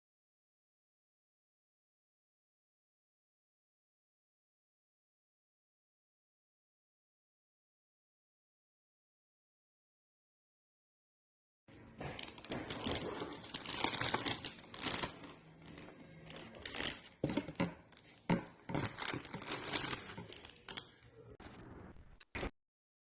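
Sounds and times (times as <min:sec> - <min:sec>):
crinkling handling noise: 0:11.7 - 0:22.5.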